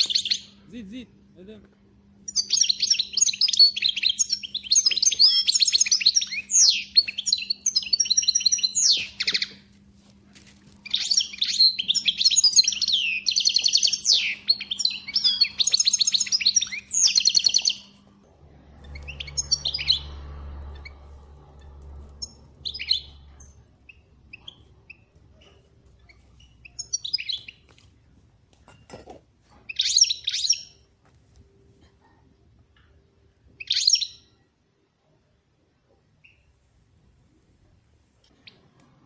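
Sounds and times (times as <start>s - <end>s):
songbird warbling: 0.0s - 0.6s, 2.3s - 9.7s, 10.8s - 18.0s, 18.8s - 21.0s, 21.6s - 27.6s
faint steady hum: 0.0s - 39.0s
low rumble: 17.8s - 26.6s.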